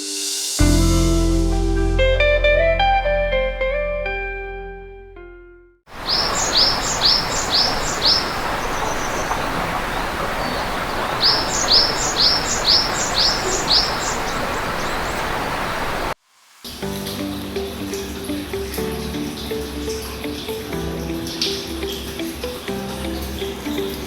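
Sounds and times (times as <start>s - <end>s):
guitar music: 0.6s - 5.8s, 16.8s - 24.0s
bird calling high notes: 5.9s - 16.2s
steady rushing noise: 5.9s - 16.2s.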